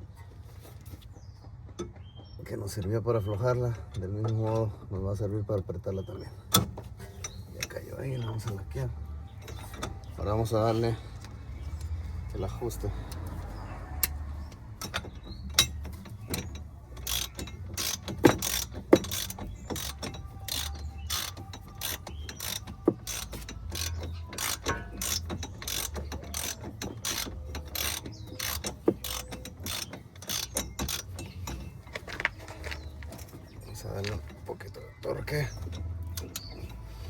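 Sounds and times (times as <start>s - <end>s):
hand tool clicking: 14.0s - 34.4s.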